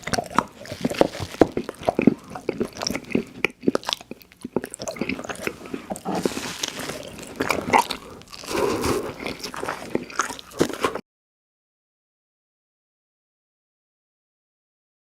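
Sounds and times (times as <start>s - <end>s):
crunchy biting and chewing: 0.0s - 11.0s.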